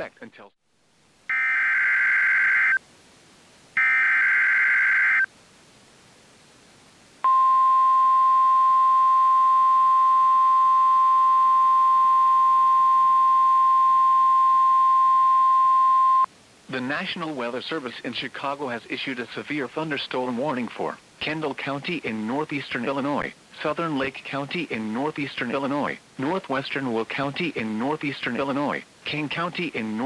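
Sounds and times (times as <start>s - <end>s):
steady alarm tone: 3.8s - 5.3s.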